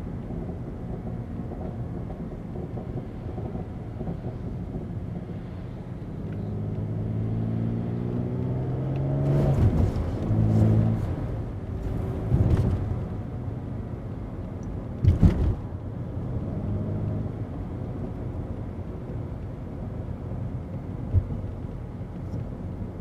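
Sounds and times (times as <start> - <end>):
car engine accelerating: 6.1 - 13.8.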